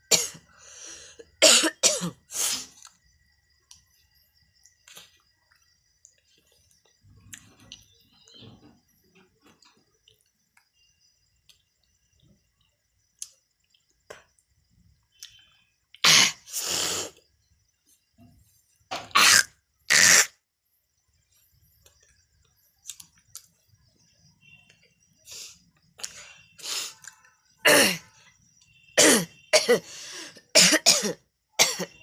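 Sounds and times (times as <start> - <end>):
person coughing into a glass: 0.1 - 0.4, 1.4 - 2.2, 27.7 - 28.0, 29.0 - 29.8, 30.5 - 32.0.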